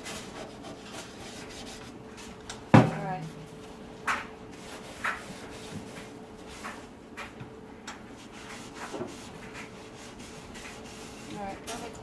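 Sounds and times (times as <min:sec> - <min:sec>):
scratchy scrubbing strokes: 0:04.5 - 0:06.8, 0:08.2 - 0:11.8.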